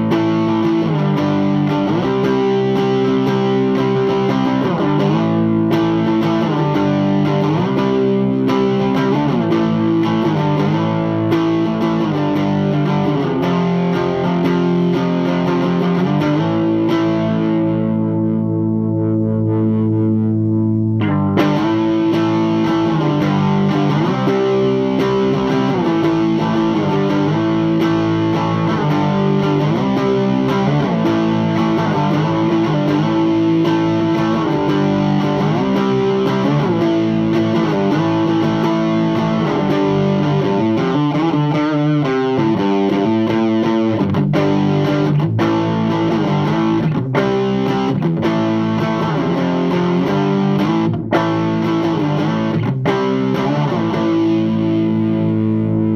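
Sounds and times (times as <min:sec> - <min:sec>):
overdriven electric guitar: 0:00.0 - 0:55.9.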